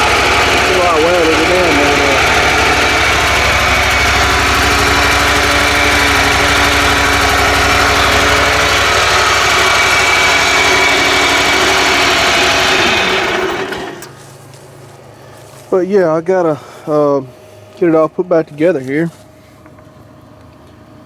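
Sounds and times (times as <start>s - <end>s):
engine winding down: 0.0s - 14.4s
riding mower engine running: 0.0s - 21.0s.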